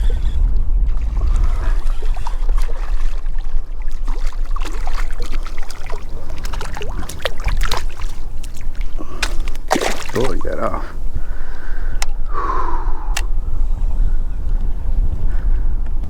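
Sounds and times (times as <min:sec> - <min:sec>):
shallow water sloshing and splashing: 0:00.0 - 0:12.0
low rumble: 0:00.0 - 0:16.0
water drips and plops: 0:02.2 - 0:10.6.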